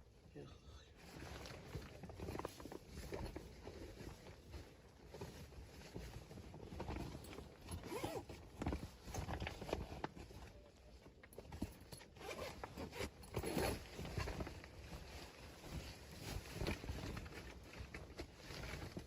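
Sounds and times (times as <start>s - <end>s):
rustling and crunching: 12.2s - 19.0s.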